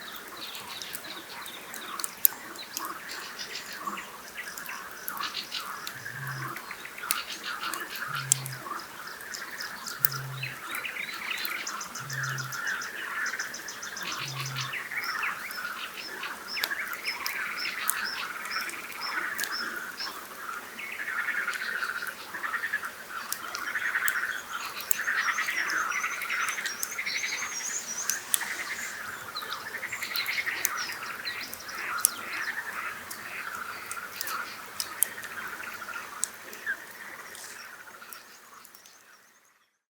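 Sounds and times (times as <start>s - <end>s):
frogs croaking chorus: 0.0s - 39.8s
campfire crackling: 0.1s - 38.9s
high bird trills: 11.7s - 14.9s.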